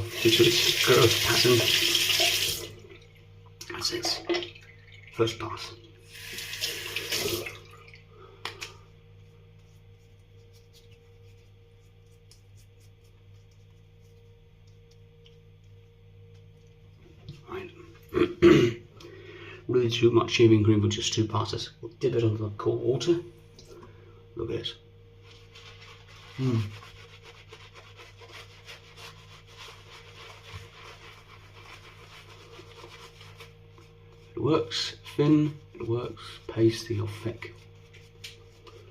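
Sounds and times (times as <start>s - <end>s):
tap water running into sink: 0.0s - 5.3s, 6.1s - 8.0s
low steady hum: 0.0s - 38.9s
shaving brush lathering cream: 9.2s - 16.9s, 25.2s - 38.9s.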